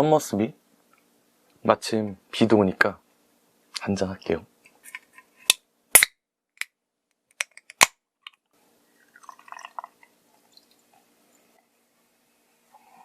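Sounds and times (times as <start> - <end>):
dripping liquid: 9.0 - 11.0.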